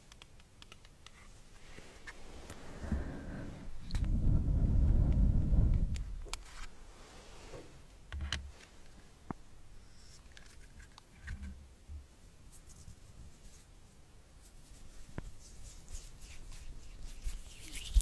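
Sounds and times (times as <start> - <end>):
soft clicks and taps: 0.0 - 1.2.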